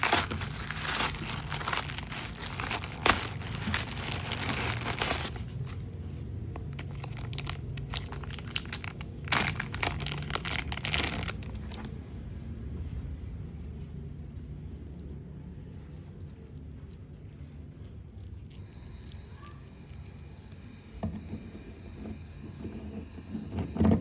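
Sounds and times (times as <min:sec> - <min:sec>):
crackles and clicks: 0:00.0 - 0:05.8, 0:06.6 - 0:11.9
plastic packaging crinkling: 0:00.0 - 0:05.8, 0:06.6 - 0:11.9.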